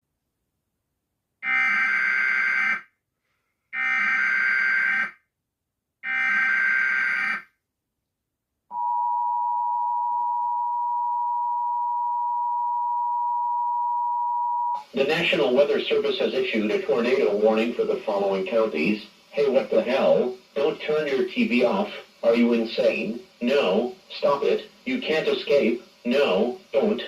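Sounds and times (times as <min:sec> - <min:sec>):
two-tone attention signal: 0:08.7 - 0:14.8.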